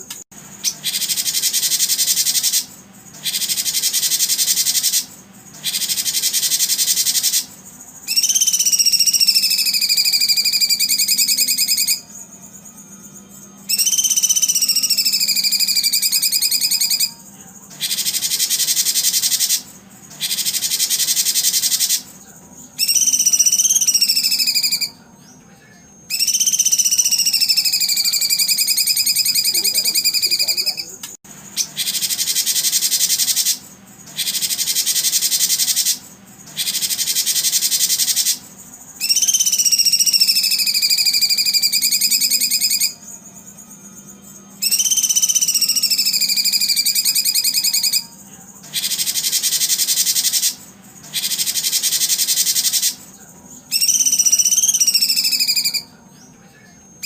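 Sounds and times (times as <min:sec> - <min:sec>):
high pulsed insect buzzing: 0:00.0 - 0:25.1, 0:25.9 - 0:56.0
whistled bird calls: 0:00.6 - 0:12.2, 0:13.6 - 0:17.2, 0:17.8 - 0:25.4, 0:26.1 - 0:43.7, 0:44.3 - 0:57.0.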